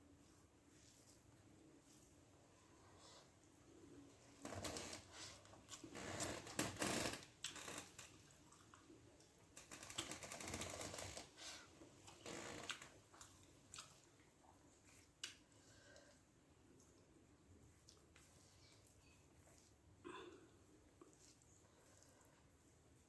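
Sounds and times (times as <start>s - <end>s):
wet clicking of hand mixing food: 11.2s - 22.4s.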